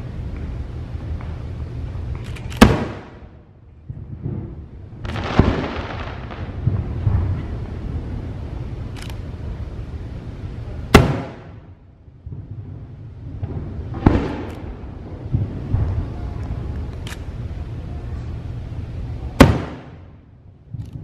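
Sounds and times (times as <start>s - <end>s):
low rumble: 0.0s - 21.0s
crackling firework burst: 2.6s - 3.3s, 3.9s - 9.6s, 10.9s - 17.4s, 19.4s - 20.2s
fireworks bangs: 2.6s - 9.6s, 10.6s - 21.0s.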